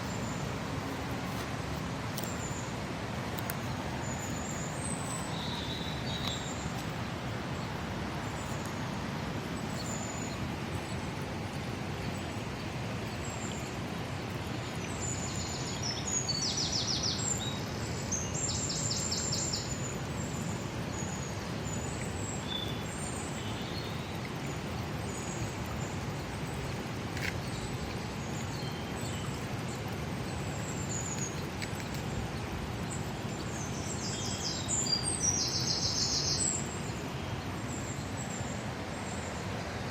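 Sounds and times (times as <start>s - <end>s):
birds chirping: 3.3s - 8.8s.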